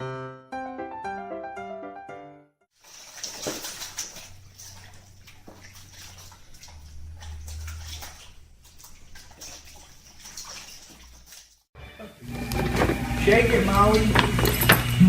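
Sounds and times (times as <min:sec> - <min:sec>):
water splashing and sloshing: 0:02.7 - 0:11.7.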